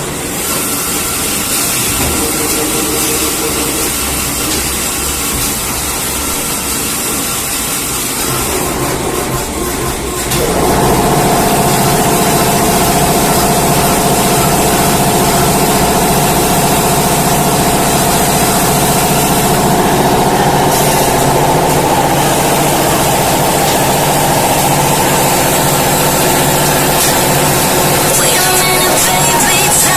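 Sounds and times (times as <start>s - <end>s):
band saw running: 0.0s - 29.9s.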